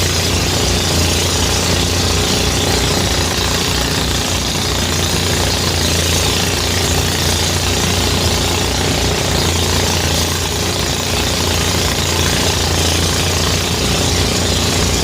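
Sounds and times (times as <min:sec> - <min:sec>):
thresher engine drone: 0:00.0 - 0:15.0.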